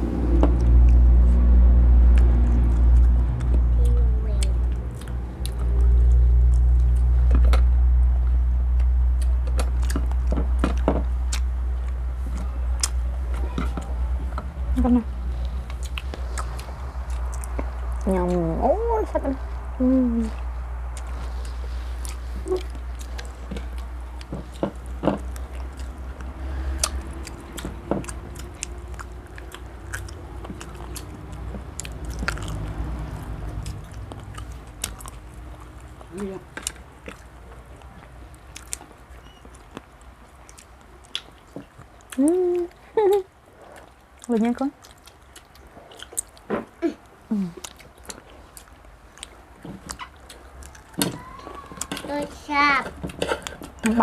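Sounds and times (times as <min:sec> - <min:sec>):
steady low rumble: 0:00.0 - 0:50.8
chewing: 0:00.2 - 0:54.0.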